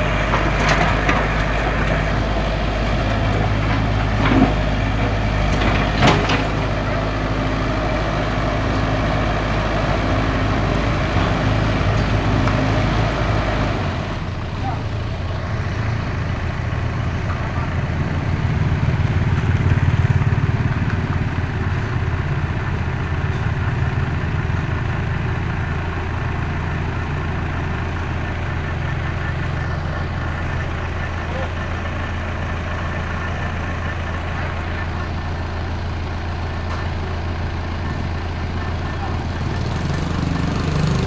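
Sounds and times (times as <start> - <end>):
heavy diesel engine idling: 0.0 - 41.0.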